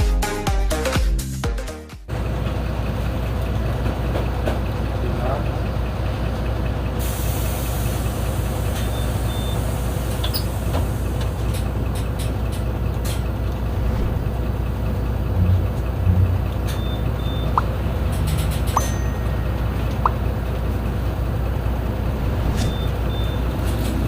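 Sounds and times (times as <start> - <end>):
bus engine humming: 2.1 - 24.0
heavy low thumps: 13.6 - 14.5
short double beep: 22.5 - 23.5.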